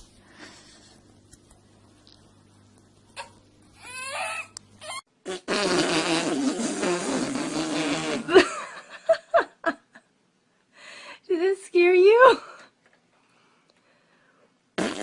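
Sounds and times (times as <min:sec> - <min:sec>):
long loud fart: 0:05.2 - 0:08.5, 0:14.8 - 0:15.0.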